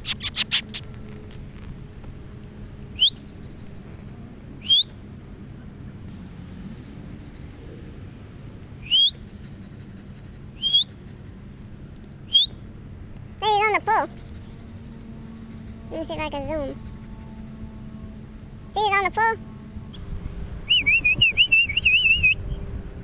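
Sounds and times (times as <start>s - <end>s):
songbird whistling: 0.0s - 0.8s, 3.0s - 3.3s, 4.6s - 5.0s, 8.8s - 9.4s, 10.6s - 11.0s, 12.2s - 12.6s, 20.7s - 22.6s.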